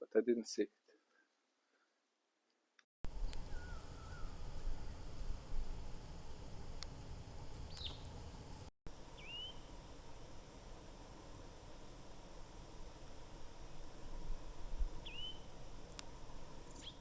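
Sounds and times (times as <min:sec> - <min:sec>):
steady low rumble: 0:03.1 - 0:09.0
bird calls: 0:03.4 - 0:04.9, 0:07.7 - 0:08.1, 0:09.2 - 0:09.7, 0:15.0 - 0:15.5, 0:16.7 - 0:17.0.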